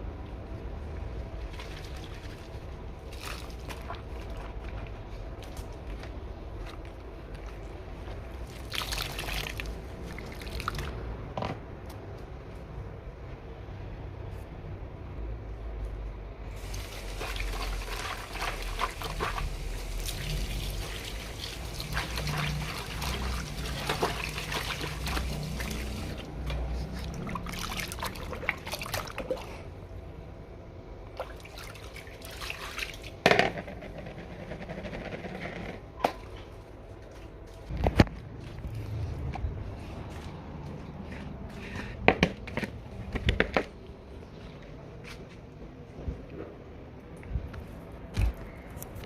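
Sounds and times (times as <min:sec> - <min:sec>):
liquid trickling: 0:08.4 - 0:10.9, 0:16.6 - 0:29.6
sharp knocks and clatters: 0:33.2 - 0:36.4.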